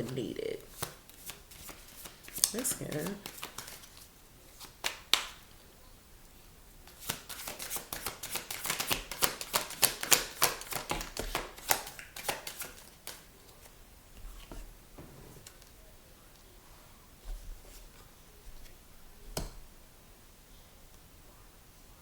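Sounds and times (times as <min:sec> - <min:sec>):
cards being shuffled by hand: 0:00.0 - 0:05.4, 0:06.9 - 0:15.7.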